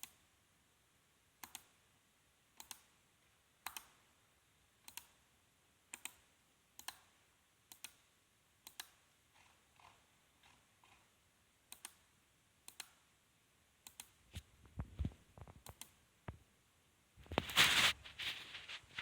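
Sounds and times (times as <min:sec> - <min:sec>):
computer mouse buttons clicking: 0:01.4 - 0:01.7, 0:02.6 - 0:02.9, 0:03.6 - 0:04.0, 0:04.8 - 0:05.2, 0:05.9 - 0:06.2, 0:06.8 - 0:07.1, 0:07.7 - 0:08.0, 0:08.6 - 0:11.0, 0:11.7 - 0:13.0, 0:13.8 - 0:14.2, 0:15.6 - 0:16.0.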